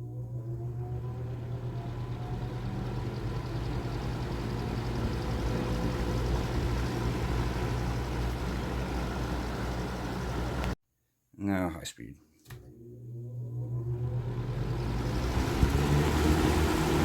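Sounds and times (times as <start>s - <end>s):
fan motor hum: 0.0s - 10.8s, 12.5s - 17.0s
rush of air from fan: 14.3s - 17.0s.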